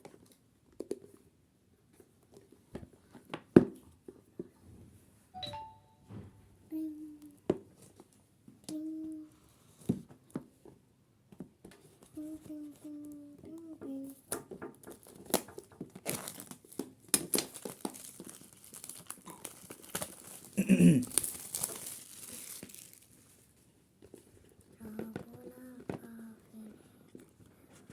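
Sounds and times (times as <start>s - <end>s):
brief falling-pitch sound: 5.4s - 6.4s
packaging crinkling and tearing: 14.8s - 23.5s.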